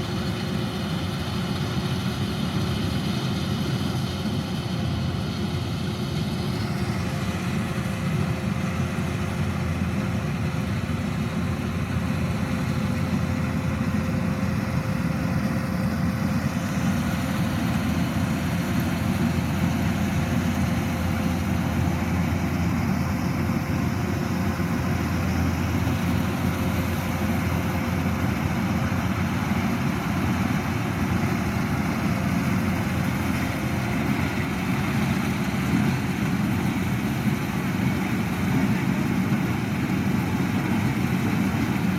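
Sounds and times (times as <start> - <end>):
combine harvester diesel engine: 0.0 - 41.9.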